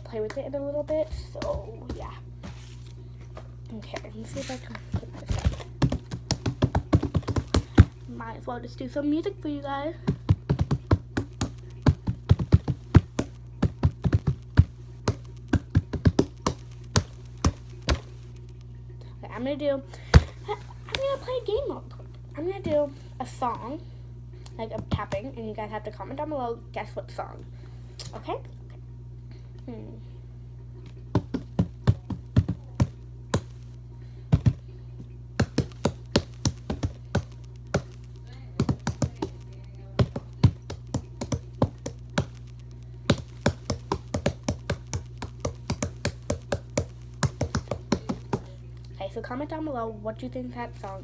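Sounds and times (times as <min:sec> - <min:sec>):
steady low hum: 0:00.0 - 0:51.0
hand tapping sharp clicks: 0:05.8 - 0:08.0, 0:10.1 - 0:18.6, 0:31.1 - 0:33.7, 0:35.4 - 0:48.5.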